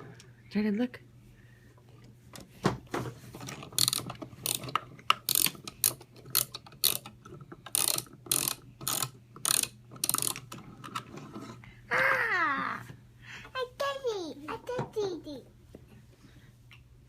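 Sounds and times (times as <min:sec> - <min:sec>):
toy train motor whirring: 0:03.8 - 0:10.5.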